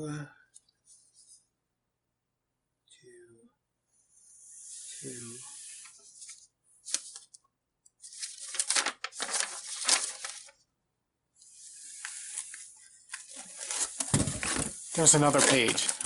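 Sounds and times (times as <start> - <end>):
paper rustling and crinkling: 5.8 - 7.4, 8.0 - 10.6, 11.5 - 16.0.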